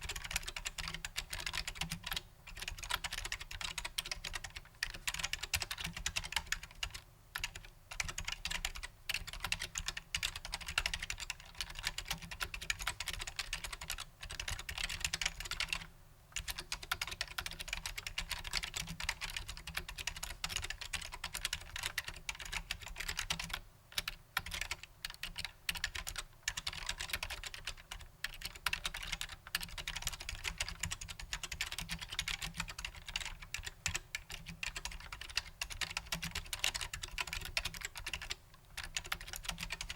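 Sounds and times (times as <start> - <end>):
typing on mechanical keyboard: 0.0 - 39.9.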